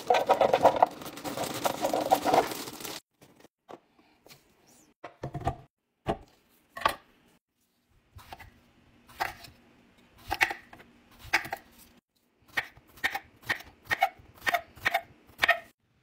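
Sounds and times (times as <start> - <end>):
packaging crinkling: 0.0 - 3.0.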